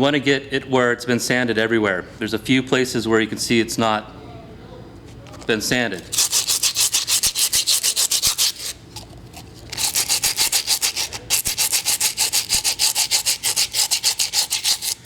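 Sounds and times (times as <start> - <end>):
sandpaper scraping clay pot: 6.0 - 15.0.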